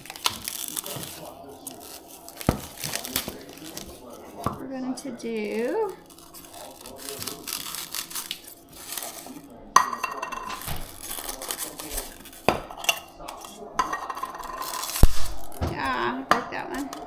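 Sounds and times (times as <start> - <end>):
thin plastic crinkling and rattling: 0.0 - 4.5, 5.2 - 9.6, 10.2 - 12.6, 14.2 - 16.0
plastic cups squeaking: 0.0 - 4.6, 5.2 - 16.0.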